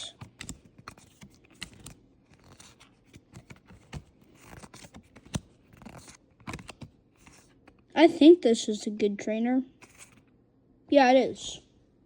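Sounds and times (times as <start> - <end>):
rustling of card stock: 0.2 - 7.8, 9.8 - 10.3
trading cards being flipped: 0.2 - 7.8, 9.8 - 10.3.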